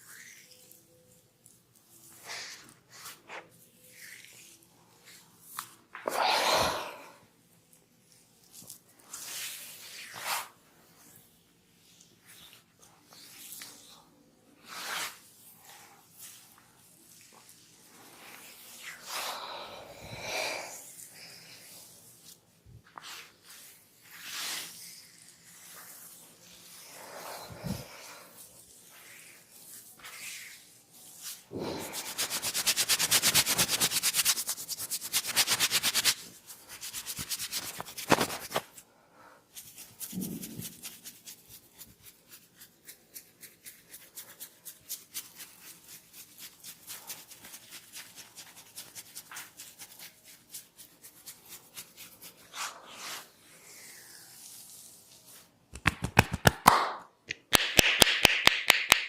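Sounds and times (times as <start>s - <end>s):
hands rubbing hair and scalp: 8.5s - 11.2s, 14.6s - 38.8s, 39.5s - 59.0s
rapid hand taps: 55.8s - 56.9s.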